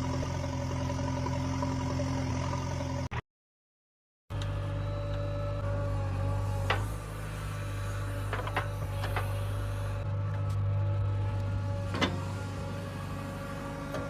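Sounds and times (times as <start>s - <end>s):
small electric motor humming: 4.4s - 14.0s.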